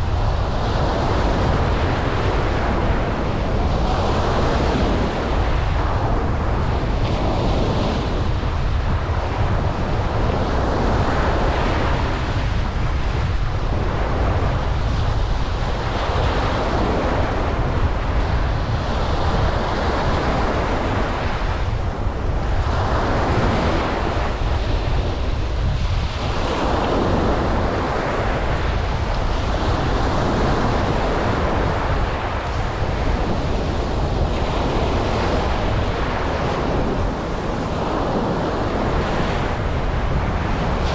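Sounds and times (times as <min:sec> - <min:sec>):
wind buffeting microphone: 0:00.0 - 0:40.9
ocean surf breaking: 0:15.6 - 0:40.9.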